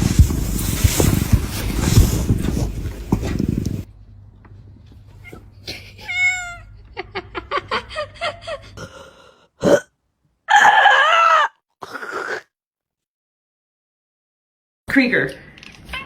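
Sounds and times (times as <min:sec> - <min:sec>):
cats meowing: 0:05.1 - 0:06.9.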